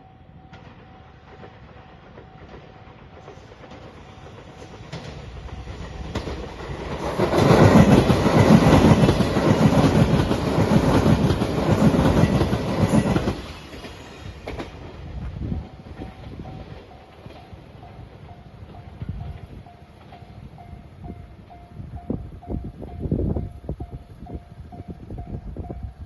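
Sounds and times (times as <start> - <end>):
train passing: 0.0 - 26.0.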